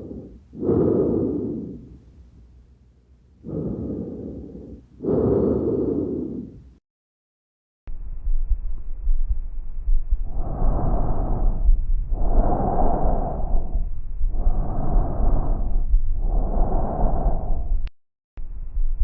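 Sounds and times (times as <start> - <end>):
breath sounds through stethoscope: 0.0 - 2.6, 3.4 - 6.8, 10.2 - 17.9.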